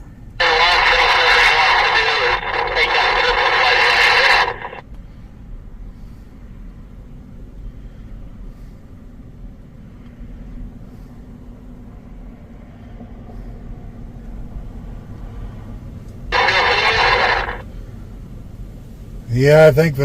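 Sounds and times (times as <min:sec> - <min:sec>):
radio speaker hiss: 0:00.4 - 0:04.8, 0:16.3 - 0:17.7.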